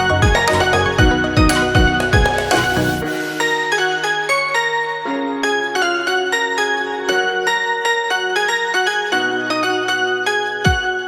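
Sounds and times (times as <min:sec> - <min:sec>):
sustained bass notes: 0:00.0 - 0:03.2
electric piano melody: 0:00.0 - 0:11.0.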